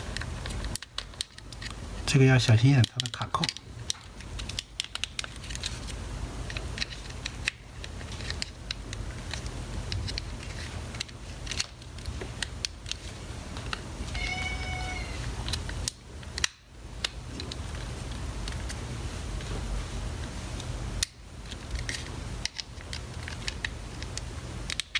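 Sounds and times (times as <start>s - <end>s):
short pitched cry: 14.1s - 15.3s.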